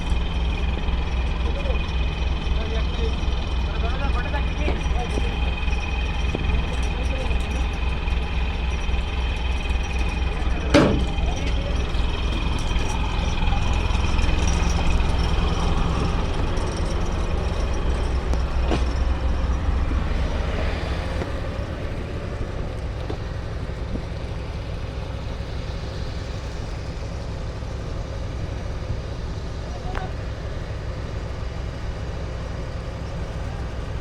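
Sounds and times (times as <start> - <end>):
motor engine droning: 0.0 - 34.0.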